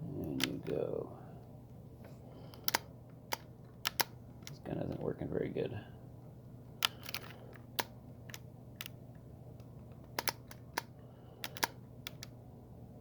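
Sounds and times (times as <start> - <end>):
sharp irregular clicks: 0.2 - 0.8, 2.4 - 5.1, 6.8 - 9.0, 9.6 - 12.4.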